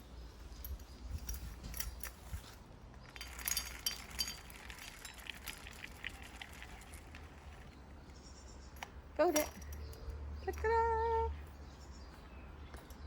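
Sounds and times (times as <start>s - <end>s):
peanuts clicking and rattling: 3.0s - 7.8s.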